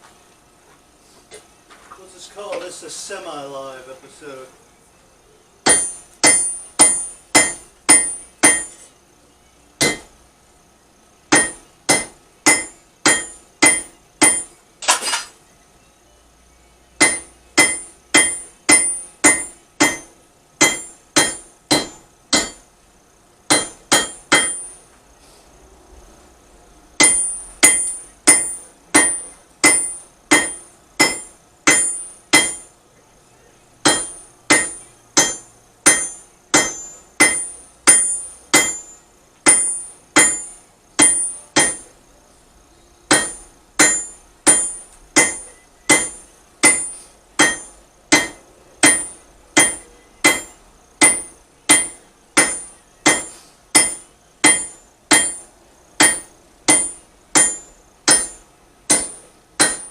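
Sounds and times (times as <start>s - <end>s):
hammer striking iron on anvil: 5.6s - 8.9s, 9.8s - 10.2s, 11.3s - 15.3s, 17.0s - 22.7s, 23.5s - 24.8s, 27.0s - 32.7s, 33.8s - 41.9s, 43.1s - 59.9s.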